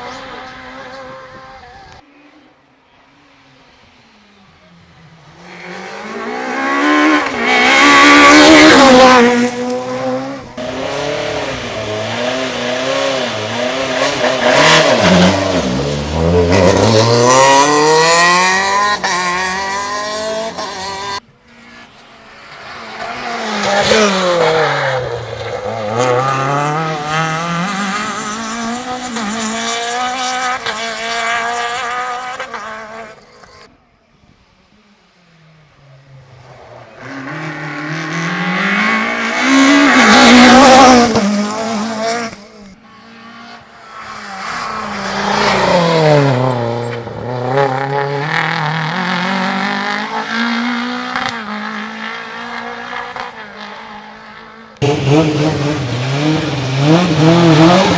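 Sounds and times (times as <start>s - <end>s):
rally car engine revving: 5.2s - 33.8s, 35.6s - 57.9s.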